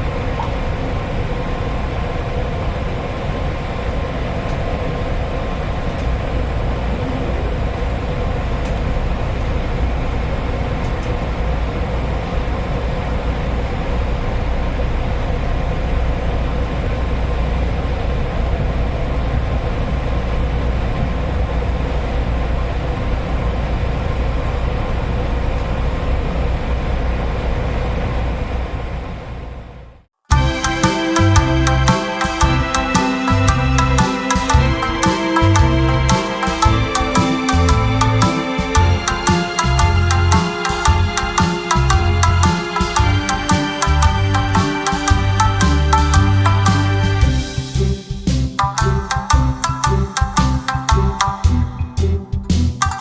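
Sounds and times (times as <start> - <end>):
train rumble: 30.3 - 53.0.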